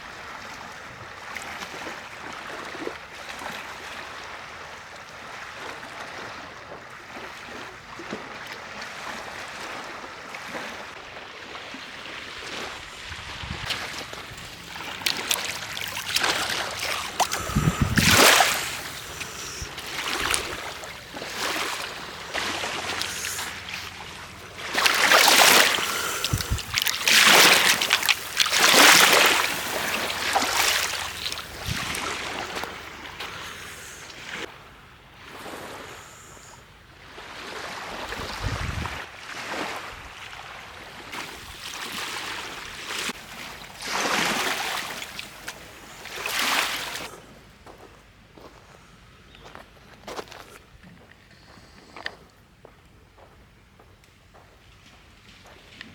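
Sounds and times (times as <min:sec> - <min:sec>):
small waves washing on shore: 0:00.0 - 0:47.2
wind buffeting microphone: 0:12.9 - 0:13.7, 0:17.0 - 0:23.6, 0:25.8 - 0:27.9, 0:30.6 - 0:32.8, 0:38.1 - 0:39.1.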